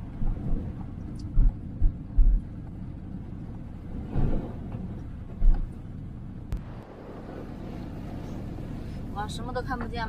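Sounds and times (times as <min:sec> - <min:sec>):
road and engine rumble: 0:00.0 - 0:10.0
heavy low thump: 0:01.3 - 0:02.4.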